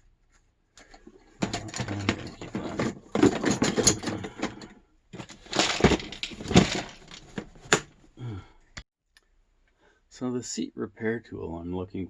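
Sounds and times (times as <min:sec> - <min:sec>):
tools and metal parts clattering: 0:00.8 - 0:08.0.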